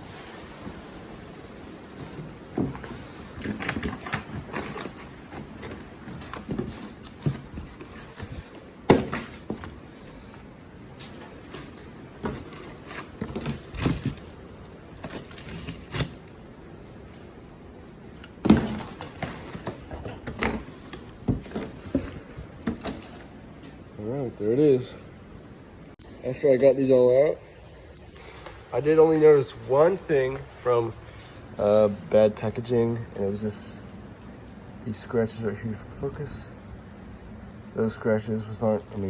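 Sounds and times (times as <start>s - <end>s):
cardboard rustling and crackling: 0.0s - 23.3s, 30.1s - 33.6s, 38.5s - 39.0s.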